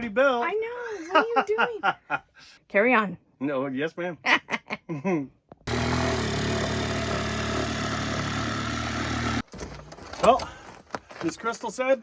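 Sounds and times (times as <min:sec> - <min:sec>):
motor humming: 0:05.7 - 0:09.4.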